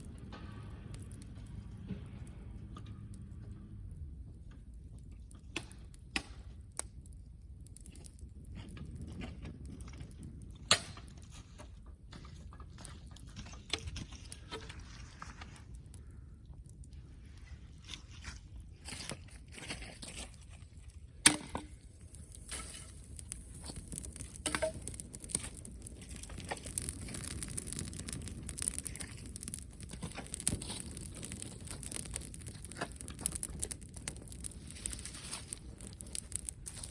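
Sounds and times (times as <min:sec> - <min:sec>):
wood fire crackling: 0:00.0 - 0:36.9.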